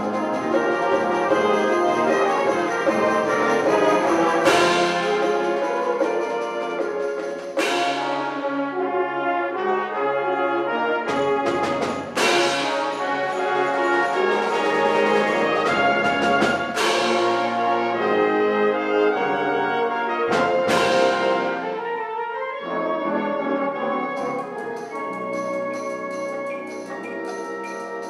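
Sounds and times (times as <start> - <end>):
wind ensemble playing: 0.0 - 28.0.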